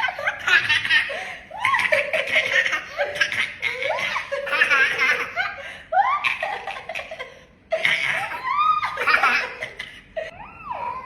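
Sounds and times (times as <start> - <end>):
high-pitched laughter: 0.0 - 11.0.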